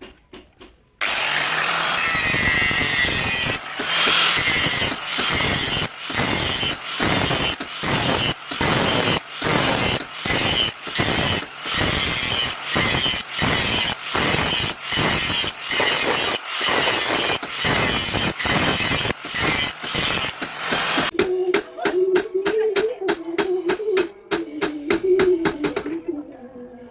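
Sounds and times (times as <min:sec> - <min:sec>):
hand tool rasping on steel: 0:01.0 - 0:21.1, 0:23.2 - 0:25.9.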